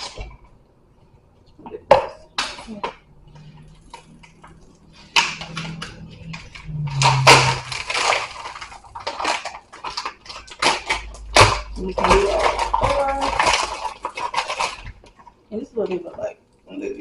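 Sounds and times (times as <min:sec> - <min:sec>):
plastic packaging crinkling: 0:03.3 - 0:15.4.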